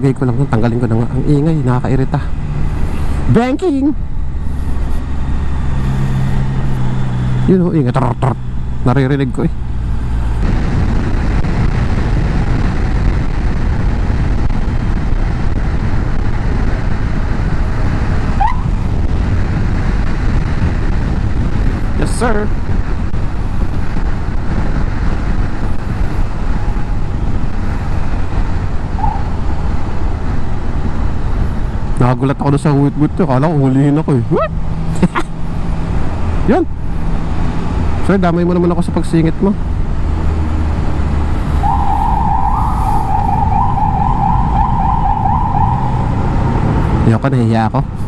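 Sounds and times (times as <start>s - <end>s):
motorcycle engine: 1.2s - 32.0s, 33.8s - 47.2s
wind noise: 9.6s - 48.0s
siren whoop: 41.6s - 46.2s.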